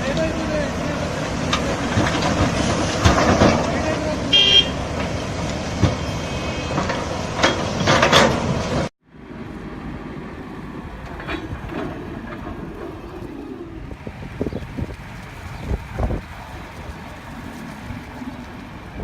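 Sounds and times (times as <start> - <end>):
heavy machinery clanking: 0.1 - 8.9, 11.0 - 13.8.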